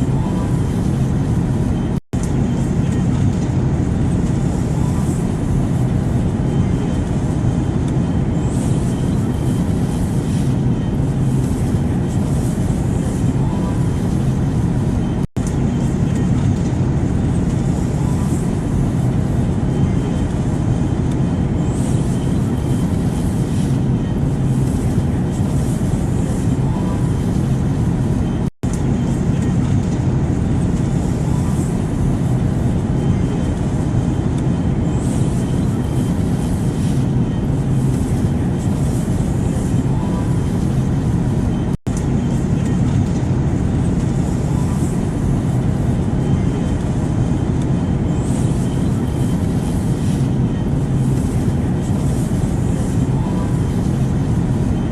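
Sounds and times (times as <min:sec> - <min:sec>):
airplane cabin noise: 0:00.0 - 0:54.9.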